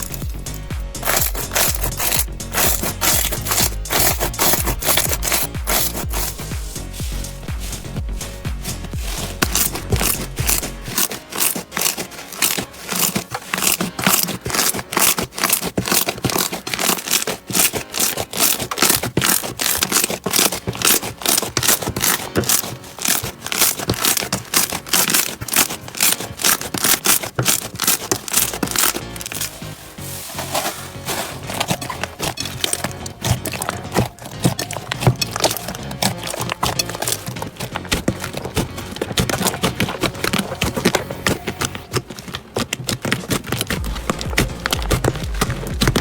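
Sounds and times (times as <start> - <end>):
slime crackling and popping: 9.0 - 29.6.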